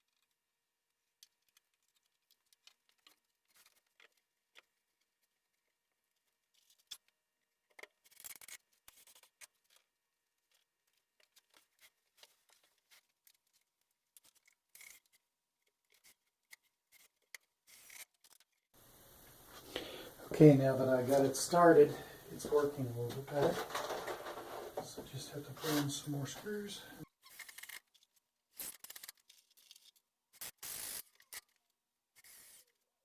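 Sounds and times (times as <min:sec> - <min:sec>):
screws and plywood clicking: 0:15.9 - 0:18.5, 0:27.2 - 0:28.0, 0:28.6 - 0:31.6, 0:32.2 - 0:32.8
plywood panels scraping: 0:23.0 - 0:26.4.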